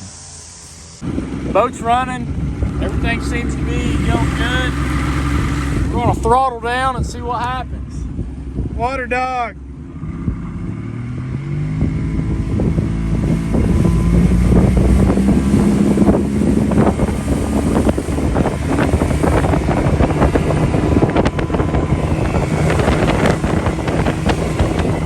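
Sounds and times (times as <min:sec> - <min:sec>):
outboard motor running: 0:00.0 - 0:25.0
wind buffeting microphone: 0:01.0 - 0:25.0.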